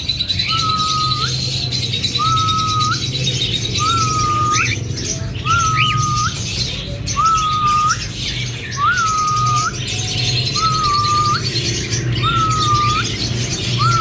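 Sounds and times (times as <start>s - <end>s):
cockatiel whistling: 0.4s - 1.4s, 2.2s - 3.2s, 3.8s - 4.8s, 5.4s - 6.4s, 7.1s - 8.1s, 8.7s - 9.8s, 10.6s - 11.6s, 12.2s - 14.0s.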